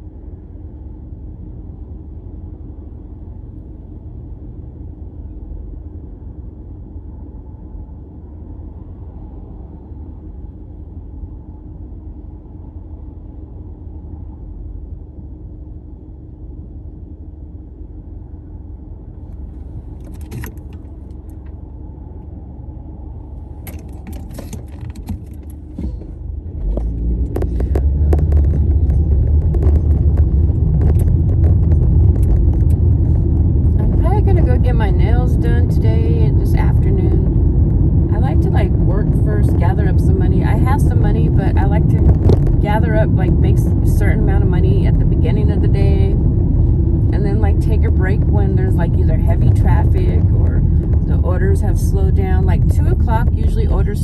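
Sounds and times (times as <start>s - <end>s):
car interior rumble: 0.0s - 54.0s
sharp clicks and rattles: 19.9s - 21.6s, 23.6s - 35.8s.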